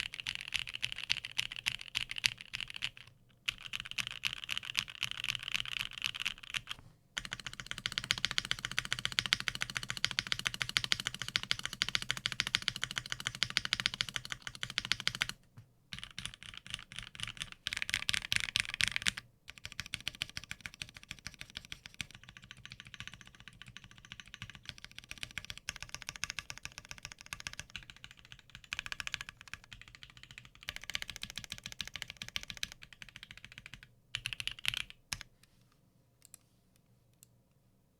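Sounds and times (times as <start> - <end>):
typing on mechanical keyboard: 0.0 - 35.3.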